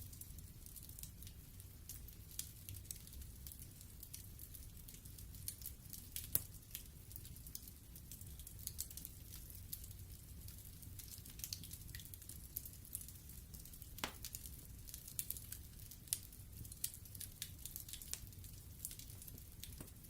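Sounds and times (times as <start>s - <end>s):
logs crackling in fireplace: 0.0s - 20.0s.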